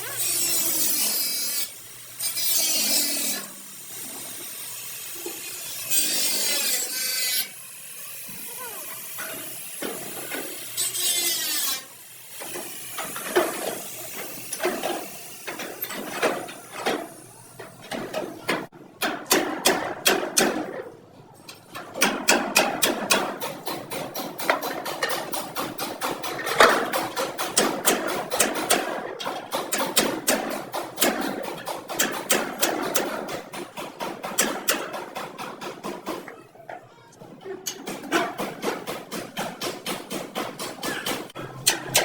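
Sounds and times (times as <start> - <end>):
file rasping across metal: 0.0 - 7.6, 9.0 - 16.5.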